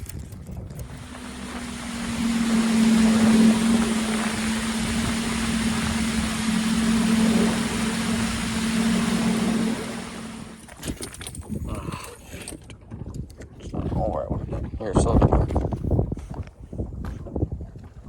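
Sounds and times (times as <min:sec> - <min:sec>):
boat motor running: 0:00.7 - 0:11.0
wind rushing: 0:00.8 - 0:10.6
water rushing: 0:00.8 - 0:10.8.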